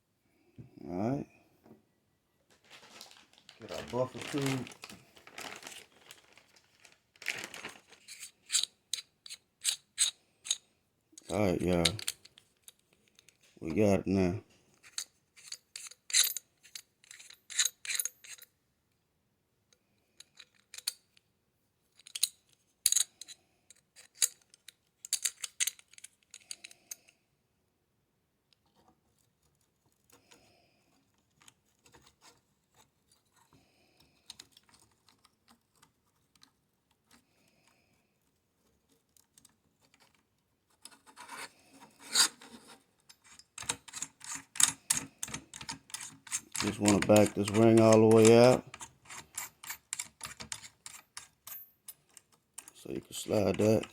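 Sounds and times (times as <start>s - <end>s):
metal parts clicking and scraping: 8.0s - 10.6s, 11.2s - 13.5s, 14.8s - 18.5s, 20.2s - 21.1s, 21.9s - 27.0s, 40.8s - 53.9s.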